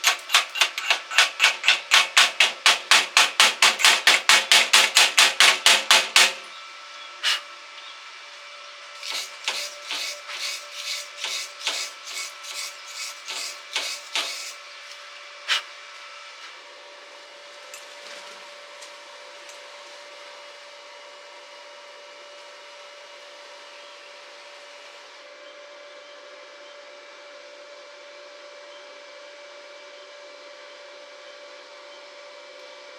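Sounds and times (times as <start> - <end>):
hammer tapping on metal: 0.0 - 6.4, 9.0 - 14.6.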